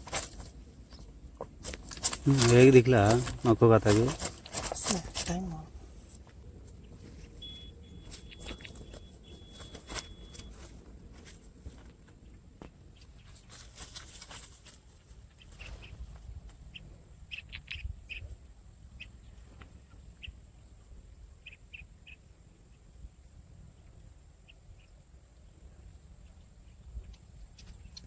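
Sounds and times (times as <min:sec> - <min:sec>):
birds chirping: 0:00.0 - 0:11.0, 0:14.9 - 0:22.8
rustling: 0:00.0 - 0:16.7
low steady rumble: 0:00.0 - 0:28.0.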